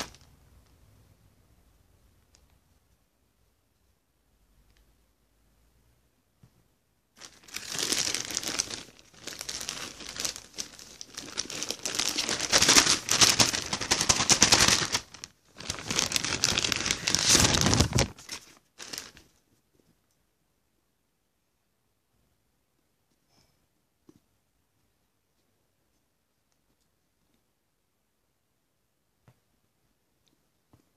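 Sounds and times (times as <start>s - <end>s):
packaging being pulled open: 7.2s - 19.2s.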